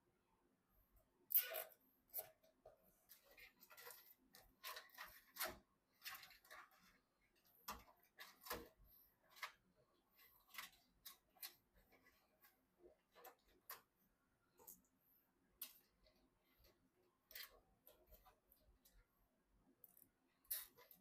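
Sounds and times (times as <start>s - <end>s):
small parts clicking and scraping: 3.1s - 7.0s, 19.8s - 21.0s.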